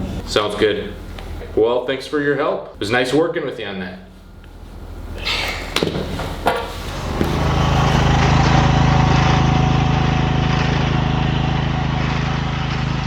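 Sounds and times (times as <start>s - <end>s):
riding mower engine running: 6.6s - 13.0s.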